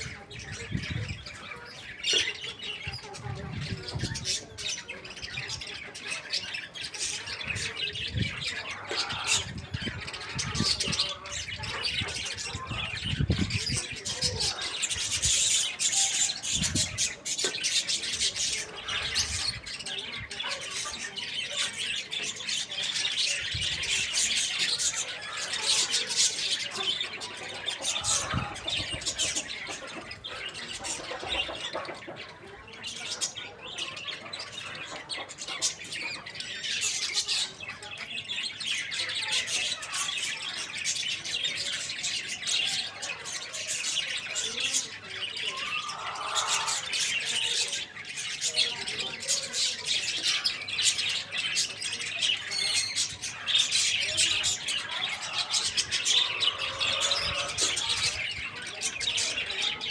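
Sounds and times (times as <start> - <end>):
small birds chirping and squawking: 0.0 - 59.9.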